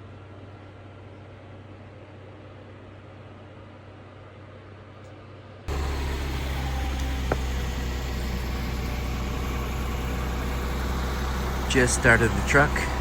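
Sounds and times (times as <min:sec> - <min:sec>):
truck engine idling: 0:05.7 - 0:13.0.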